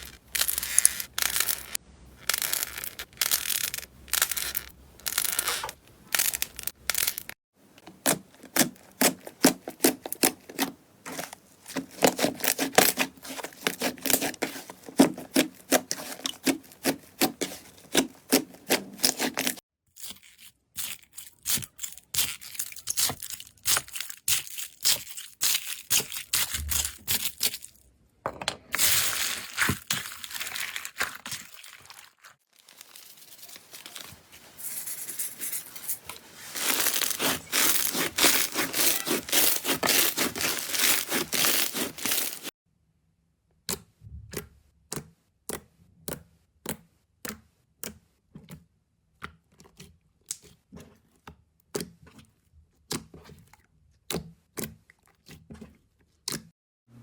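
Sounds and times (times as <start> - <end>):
slime crackling and tearing: 7.9 - 27.7, 28.8 - 34.2, 36.3 - 42.5.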